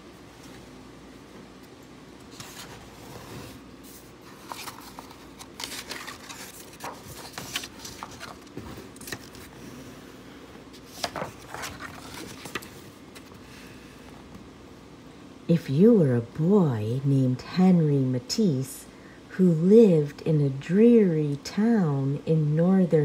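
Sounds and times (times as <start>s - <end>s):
book pages rustling: 2.2s - 9.8s, 10.7s - 13.6s.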